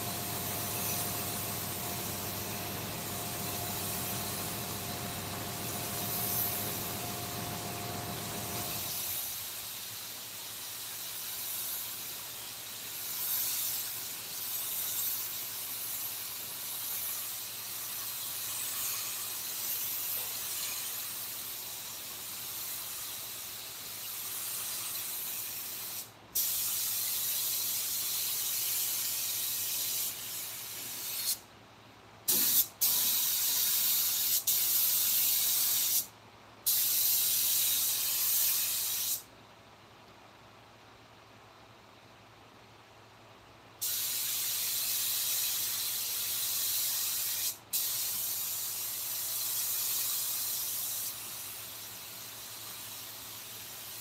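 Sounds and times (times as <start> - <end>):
compressed air hissing: 0.0 - 9.8, 32.3 - 36.1, 43.8 - 51.3.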